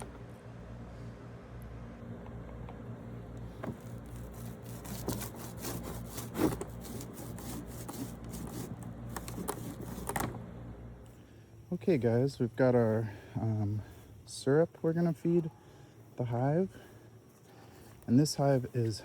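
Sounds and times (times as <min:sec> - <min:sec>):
steady low hum: 0:00.0 - 0:19.0
wood rubbing and scraping: 0:03.4 - 0:10.4.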